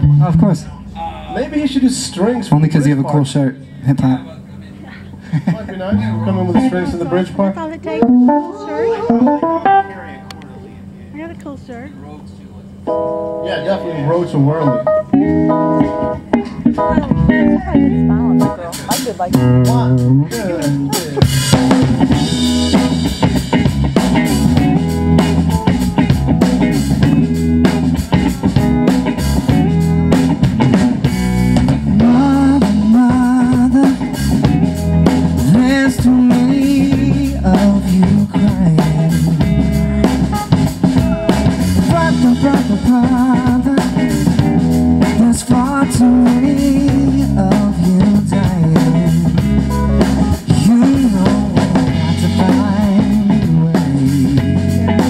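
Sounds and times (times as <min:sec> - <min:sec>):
drum kit: 0:00.0 - 0:03.0, 0:12.8 - 0:55.0
bass guitar: 0:00.0 - 0:55.0
electric guitar: 0:05.8 - 0:11.9, 0:12.7 - 0:55.0
person singing: 0:08.0 - 0:10.3, 0:31.9 - 0:34.2, 0:35.4 - 0:39.5, 0:41.0 - 0:44.4, 0:45.0 - 0:49.4, 0:50.3 - 0:54.5.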